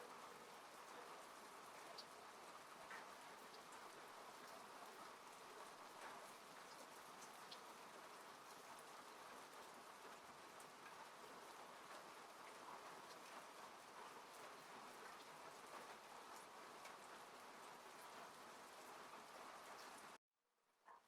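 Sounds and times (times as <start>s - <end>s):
faint steady rain: 0.0s - 20.2s.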